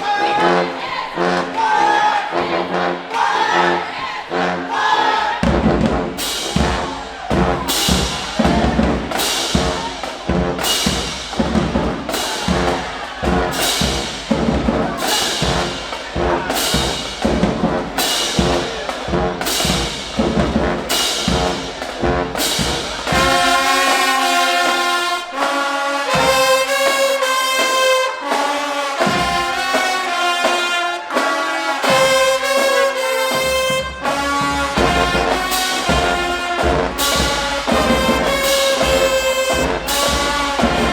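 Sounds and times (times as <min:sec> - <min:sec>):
drumline: 0:00.0 - 0:40.9
marching band playing: 0:00.0 - 0:40.9.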